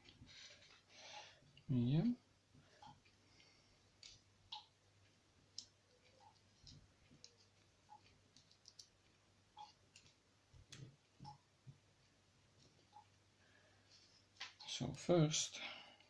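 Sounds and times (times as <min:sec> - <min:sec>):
low steady hum: 0:00.0 - 0:16.0
small metal parts clicking: 0:08.4 - 0:08.9.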